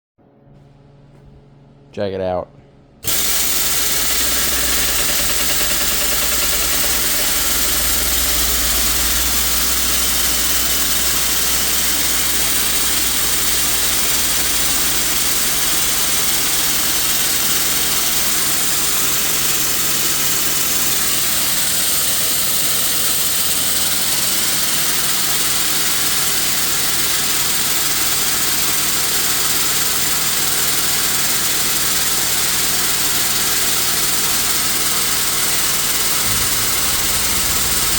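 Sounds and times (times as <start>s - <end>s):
air-driven pump humming: 2.6s - 37.9s
compressed air hissing: 3.0s - 37.9s.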